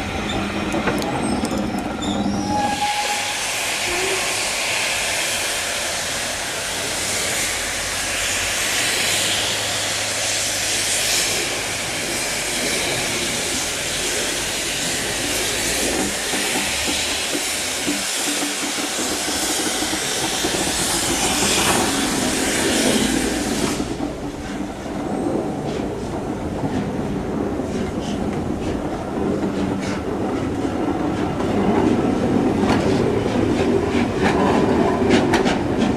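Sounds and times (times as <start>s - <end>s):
wheels clattering on rails: 0.0s - 2.4s, 14.8s - 35.9s
train rumbling: 0.0s - 35.9s
steam hissing: 2.4s - 35.8s.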